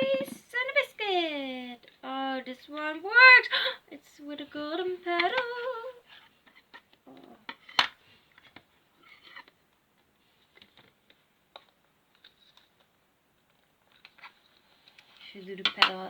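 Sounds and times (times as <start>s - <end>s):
plastic blocks clicking together: 15.6s - 16.0s.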